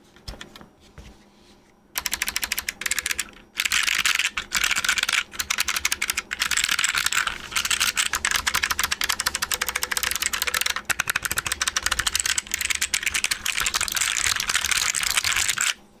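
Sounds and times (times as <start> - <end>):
mechanical keyboard typing: 2.0 - 15.8.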